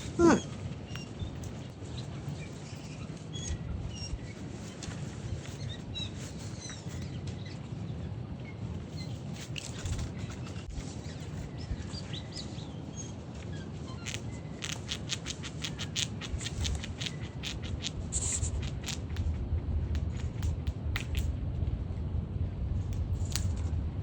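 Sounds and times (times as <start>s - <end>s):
steady low rumble: 14.1s - 24.0s.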